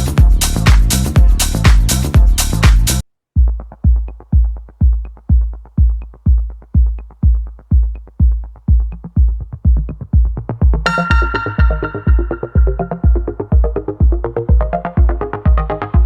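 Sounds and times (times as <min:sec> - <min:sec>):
drum machine kick: 0:00.0 - 0:16.0
synthesizer chord: 0:10.9 - 0:14.0.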